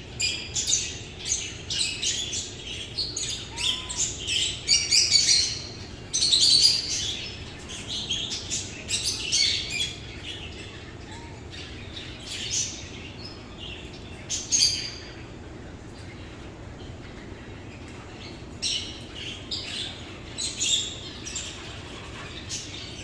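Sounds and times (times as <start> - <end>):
birds chirping: 0.0 - 23.0.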